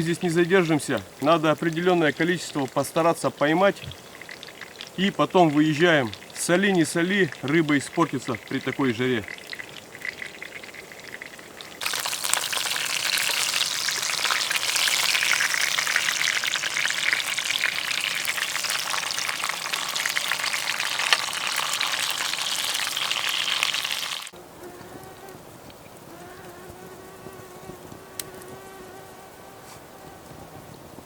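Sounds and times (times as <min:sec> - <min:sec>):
fish sizzling in a frying pan: 0:03.8 - 0:06.4, 0:08.6 - 0:24.4.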